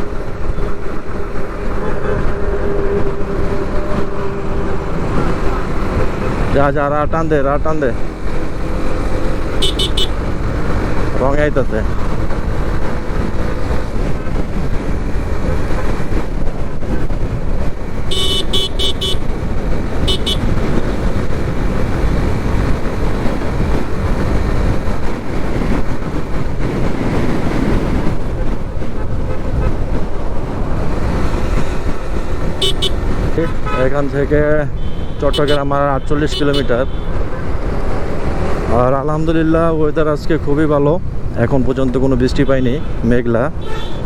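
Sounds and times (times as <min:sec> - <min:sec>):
wind noise: 0:00.0 - 0:42.2
motorcycle road noise: 0:00.0 - 0:44.0
horn beeps: 0:09.6 - 0:10.2, 0:18.1 - 0:19.3, 0:20.0 - 0:20.5, 0:32.6 - 0:33.0.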